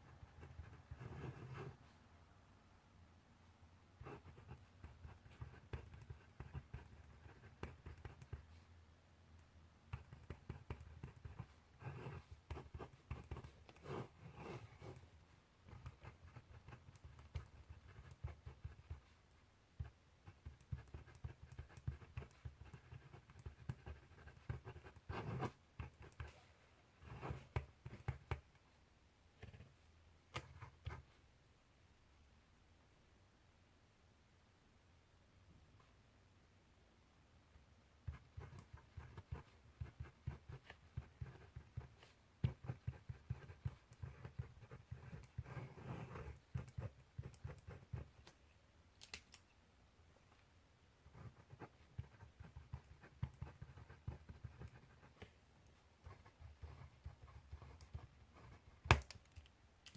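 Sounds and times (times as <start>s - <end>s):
handwriting scratching on paper: 0.0s - 1.9s, 4.0s - 8.6s, 9.9s - 28.4s, 38.0s - 48.3s, 51.0s - 59.0s.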